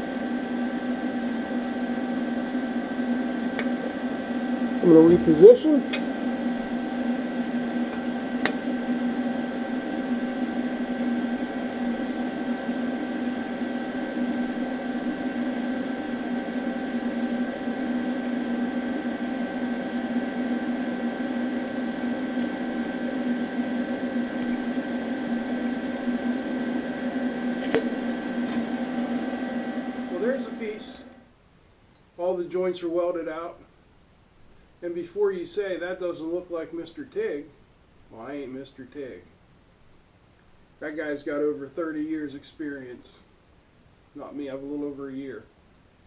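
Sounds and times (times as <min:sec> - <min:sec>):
welding hum: 0:00.0 - 0:31.3.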